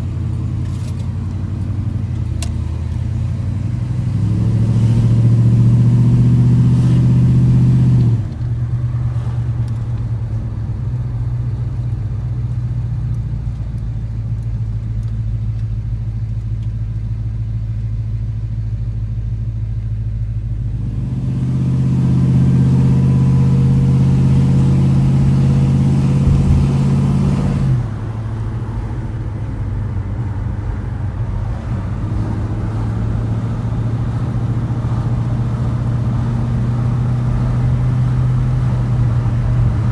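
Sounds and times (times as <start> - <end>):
deep engine revving: 2.4 - 10.1, 20.6 - 39.9.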